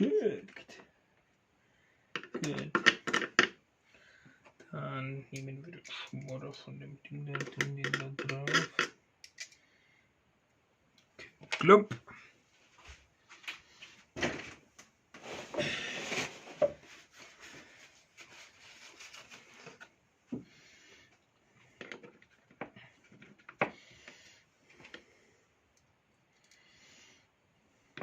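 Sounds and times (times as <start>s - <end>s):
parts knocking and clicking: 2.2s - 3.6s, 7.3s - 9.6s
rubbing and scraping: 15.2s - 20.0s.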